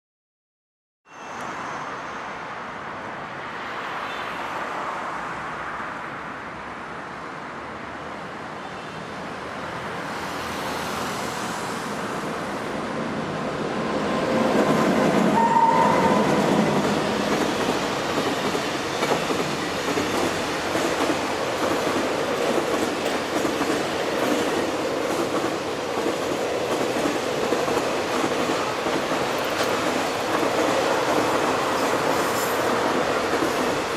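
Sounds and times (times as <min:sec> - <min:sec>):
freight train passing: 0:09.1 - 0:33.9.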